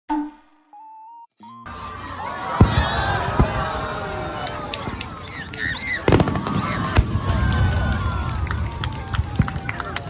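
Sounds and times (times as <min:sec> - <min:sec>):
crowd chattering: 0:01.6 - 0:10.0
fireworks booming: 0:02.6 - 0:09.7.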